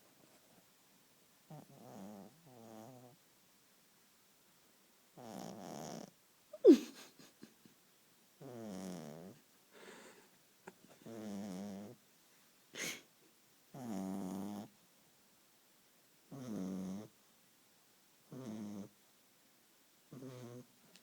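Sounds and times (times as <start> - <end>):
dog snoring: 1.5 - 3.2, 5.2 - 6.1, 8.4 - 9.4, 11.0 - 12.0, 13.8 - 14.7, 16.3 - 17.1, 18.3 - 18.9, 20.1 - 20.6.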